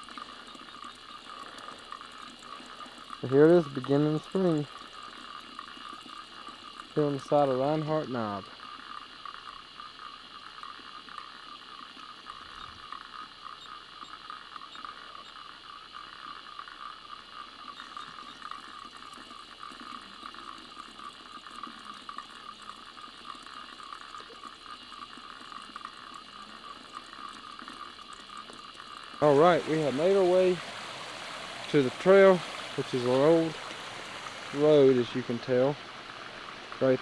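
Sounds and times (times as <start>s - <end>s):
spring water trickling: 0.0s - 9.4s, 17.7s - 37.0s.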